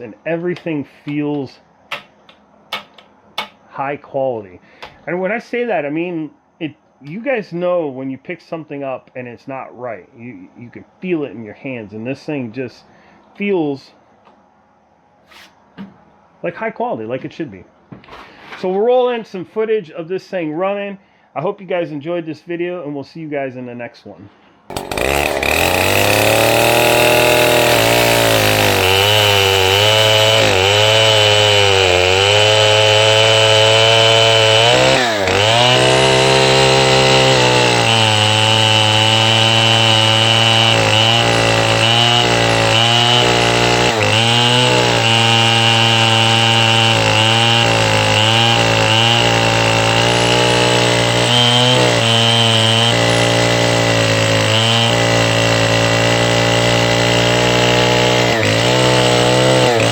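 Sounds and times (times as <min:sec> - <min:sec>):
chainsaw cutting wood: 0:01.9 - 0:03.6, 0:24.7 - 0:59.9.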